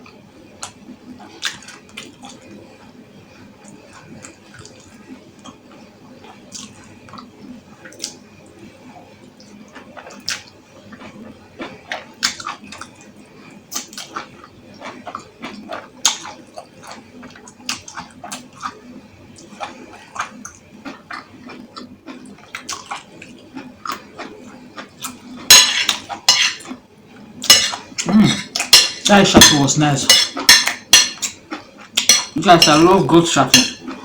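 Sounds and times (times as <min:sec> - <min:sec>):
person chewing: 0:13.7 - 0:18.8, 0:19.4 - 0:26.8, 0:27.4 - 0:34.0
spoon clinking against bowl: 0:25.5 - 0:26.7, 0:27.4 - 0:31.4, 0:32.0 - 0:33.9
cutlery clatter: 0:25.5 - 0:26.8, 0:27.4 - 0:31.4, 0:32.0 - 0:33.9.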